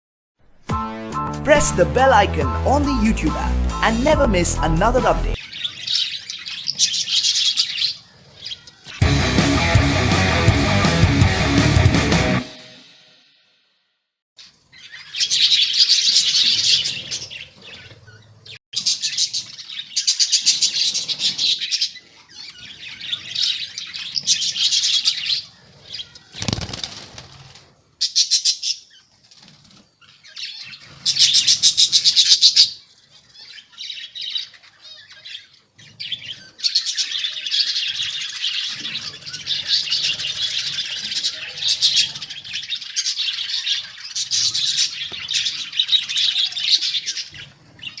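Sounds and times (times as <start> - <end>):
wings flapping: 26.3 - 27.7.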